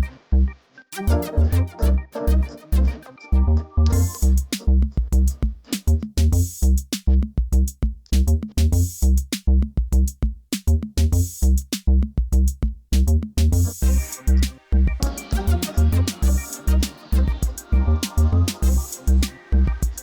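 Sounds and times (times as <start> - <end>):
electronic music with drum-machine beat: 0.0 - 6.6, 13.0 - 20.0.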